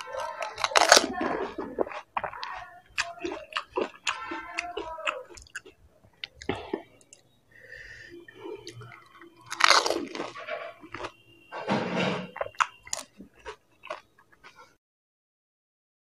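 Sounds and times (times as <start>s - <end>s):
wet mouth sounds: 0.0s - 11.1s
crunchy snack chewing: 0.0s - 14.8s.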